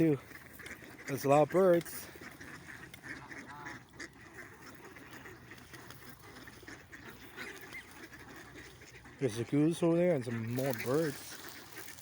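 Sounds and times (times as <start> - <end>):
ducks quacking: 0.0 - 12.0.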